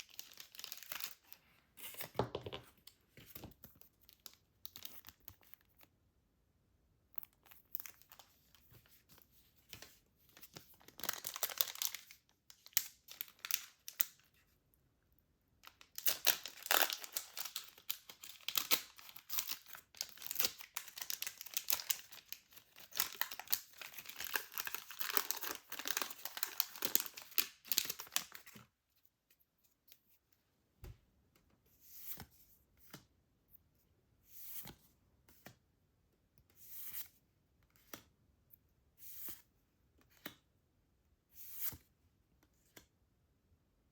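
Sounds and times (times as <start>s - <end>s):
plastic packaging tearing and crinkling: 0.0s - 1.3s, 10.8s - 14.2s, 15.6s - 28.6s.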